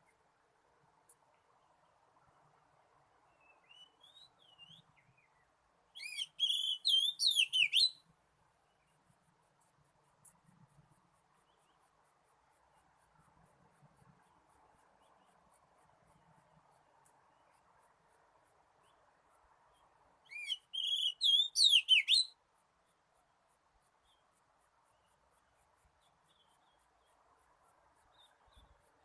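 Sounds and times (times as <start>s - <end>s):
faint high ticks: 1.0s - 1.6s, 8.7s - 20.6s
bird whistled song: 3.3s - 5.4s, 6.0s - 8.0s, 20.2s - 22.4s.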